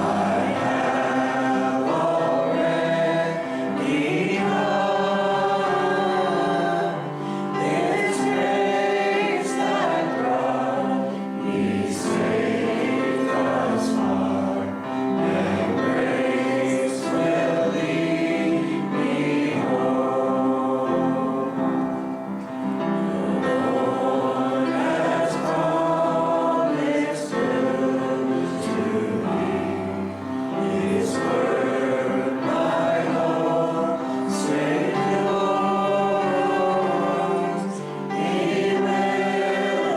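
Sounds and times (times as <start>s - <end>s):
group singing a hymn: 0.0s - 39.9s
instrumental accompaniment: 0.0s - 39.9s.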